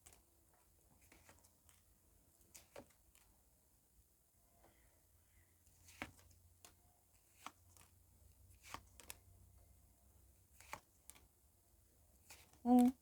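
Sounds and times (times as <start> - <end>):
cards clicking and tapping: 1.0 - 1.8, 2.4 - 3.3, 5.8 - 7.9, 8.6 - 9.2, 10.5 - 11.3, 12.2 - 13.0.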